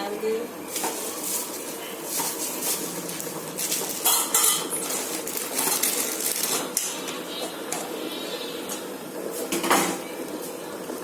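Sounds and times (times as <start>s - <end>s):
utensils and cookware clattering: 0.7s - 8.0s, 8.7s - 10.1s.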